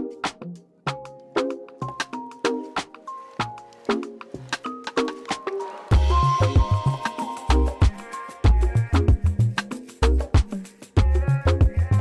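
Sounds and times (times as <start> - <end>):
background music with steady beat: 0.0 - 12.0.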